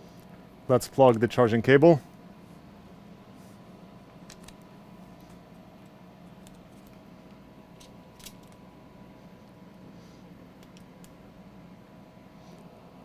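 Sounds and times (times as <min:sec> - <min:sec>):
low electrical hum: 0:00.0 - 0:13.0
laptop and cable handling clicks: 0:04.3 - 0:05.4, 0:07.8 - 0:08.6.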